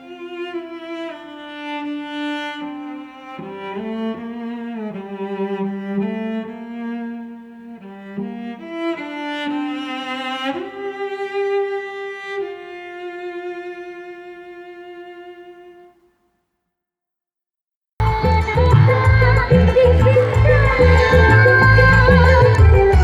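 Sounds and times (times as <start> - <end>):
cello and violin playing: 0.0 - 16.0, 19.4 - 23.0.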